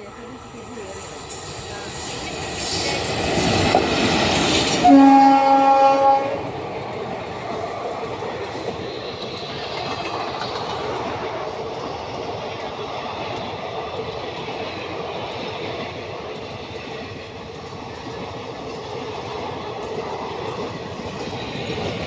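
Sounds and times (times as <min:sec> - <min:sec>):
train rushing past: 0:00.0 - 0:22.0
train horn blast: 0:04.7 - 0:06.5.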